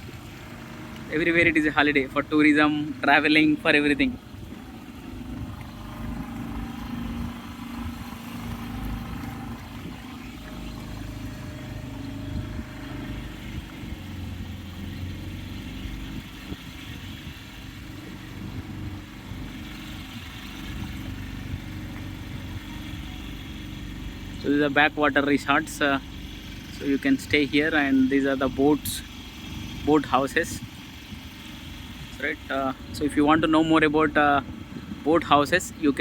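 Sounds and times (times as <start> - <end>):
boat motor rumbling: 0.0 - 36.0.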